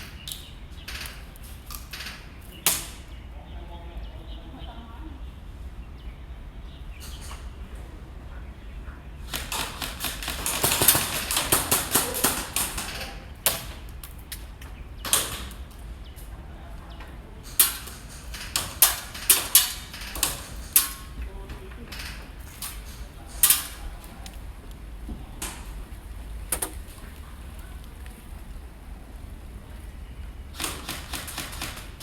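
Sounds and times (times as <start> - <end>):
airsoft guns firing: 9.4 - 13.8, 30.5 - 32.0.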